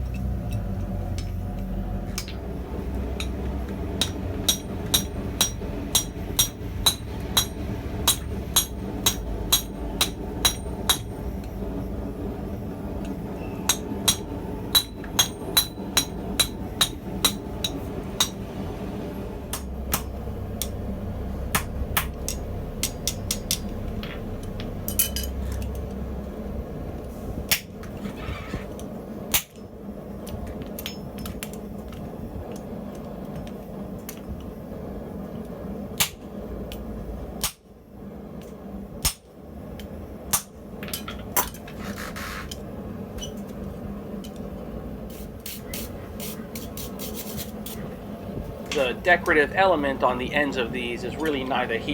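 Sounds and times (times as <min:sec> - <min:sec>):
steady low hum: 0:00.0 - 0:51.9
hammer striking steel on anvil: 0:03.2 - 0:11.2, 0:13.6 - 0:18.4, 0:19.5 - 0:20.8, 0:21.5 - 0:25.7.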